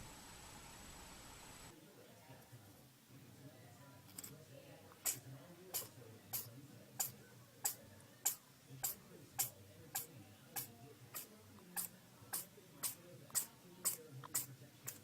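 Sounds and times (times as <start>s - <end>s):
small animal sneezing: 5.0s - 15.0s.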